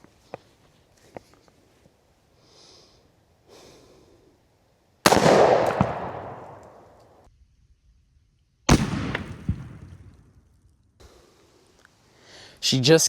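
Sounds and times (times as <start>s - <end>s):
gunshot with echoing tail: 5.1s - 7.0s, 8.7s - 10.2s.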